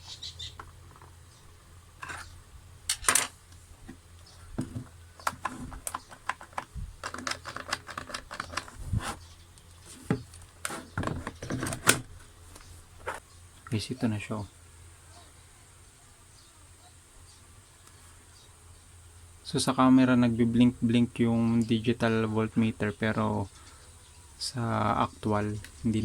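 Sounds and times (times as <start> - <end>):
plastic parts clicking and knocking: 4.6 - 8.8, 10.1 - 13.2.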